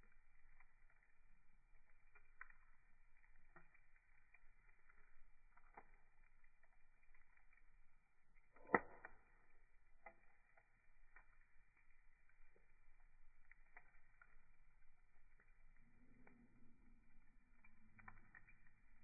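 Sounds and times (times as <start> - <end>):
wood fire crackling: 0.0 - 19.0
loud fire pop: 8.6 - 9.1.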